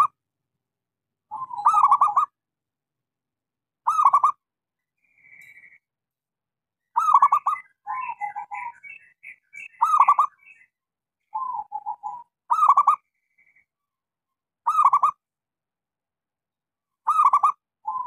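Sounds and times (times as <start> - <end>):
dove cooing: 1.3 - 2.3, 11.4 - 13.0, 17.1 - 18.0.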